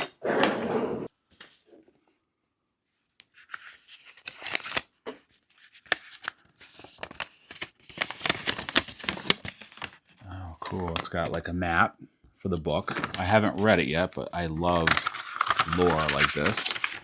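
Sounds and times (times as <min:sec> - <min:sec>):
paper rustling and crinkling: 0:03.3 - 0:11.4, 0:12.8 - 0:13.8, 0:14.6 - 0:17.0.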